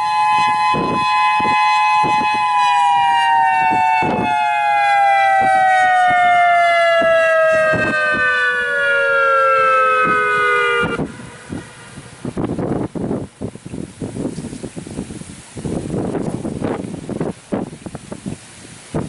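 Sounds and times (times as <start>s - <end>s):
two-tone electronic siren: 0.0s - 12.8s
wind buffeting microphone: 0.0s - 19.0s.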